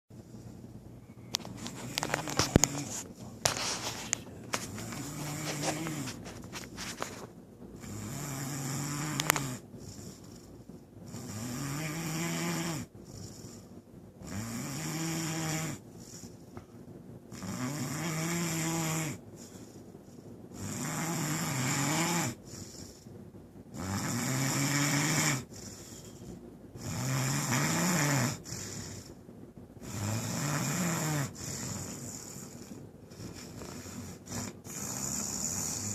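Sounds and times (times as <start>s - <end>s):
person snoring: 1.4s - 6.7s, 7.8s - 10.3s, 11.1s - 13.5s, 20.5s - 22.4s, 23.8s - 26.0s, 26.8s - 29.1s, 29.8s - 35.9s.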